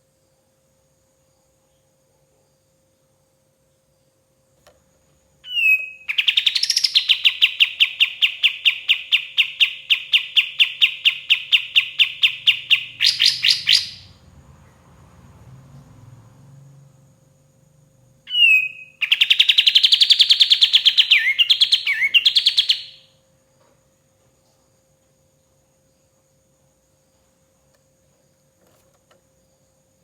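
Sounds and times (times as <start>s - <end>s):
songbird chirping: 3.6s - 23.7s.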